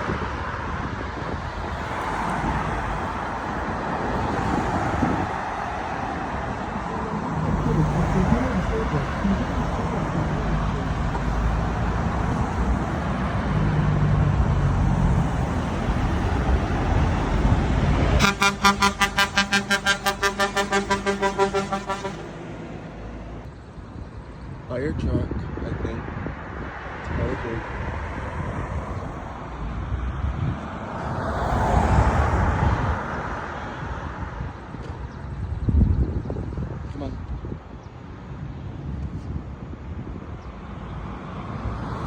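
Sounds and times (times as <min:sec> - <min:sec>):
road traffic passing: 0:00.0 - 0:42.0
low engine hum: 0:00.8 - 0:24.6.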